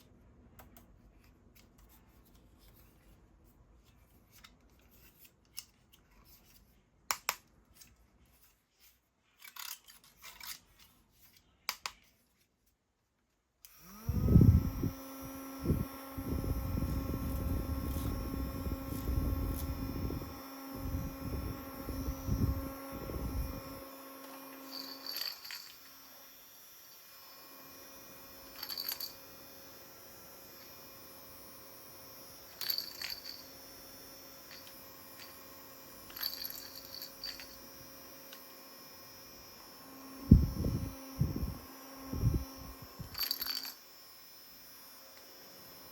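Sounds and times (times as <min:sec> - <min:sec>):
desk fan motor humming: 0:13.7 - 0:45.9.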